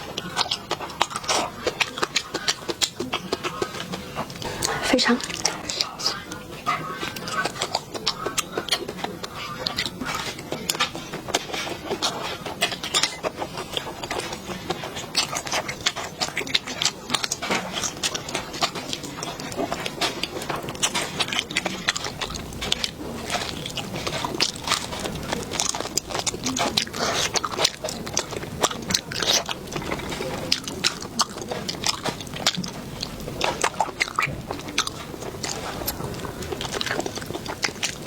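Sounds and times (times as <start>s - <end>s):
chewing and lip-smacking: 0.0s - 38.0s.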